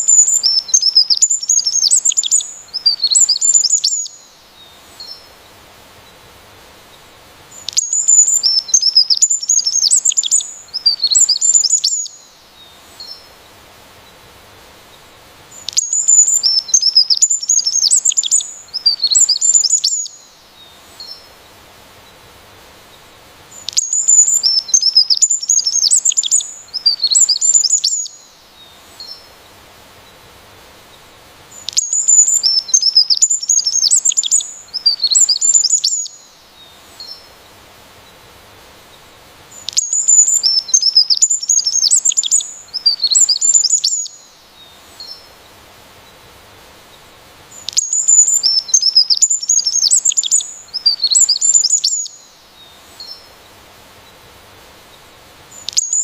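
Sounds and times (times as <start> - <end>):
songbird chirping rapidly: 0.0 - 5.2, 7.6 - 13.3, 15.6 - 21.2, 23.6 - 29.2, 31.6 - 37.3, 39.6 - 45.3, 47.6 - 53.3, 55.5 - 56.0.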